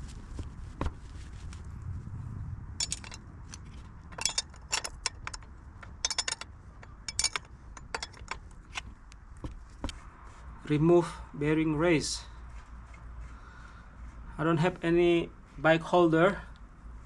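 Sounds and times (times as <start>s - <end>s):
small metal parts clinking: 2.8s - 9.1s.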